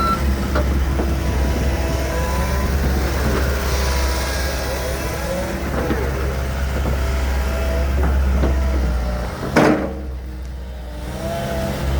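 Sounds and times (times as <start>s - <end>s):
whining hydraulics: 0.0s - 9.6s
excavator diesel engine droning: 0.0s - 11.9s.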